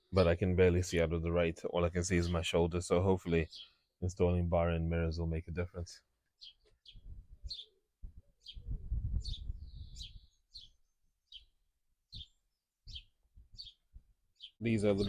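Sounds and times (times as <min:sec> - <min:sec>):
small bird chirping: 0:03.4 - 0:03.9, 0:06.3 - 0:15.0.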